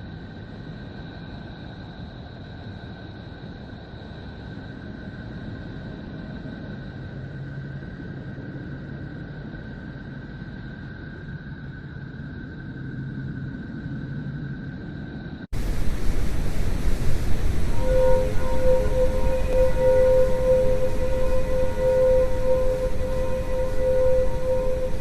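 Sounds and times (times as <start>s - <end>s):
faint high whistling tones: 15.6s - 25.0s
low hum: 15.6s - 25.0s
steady rushing noise: 15.6s - 25.0s.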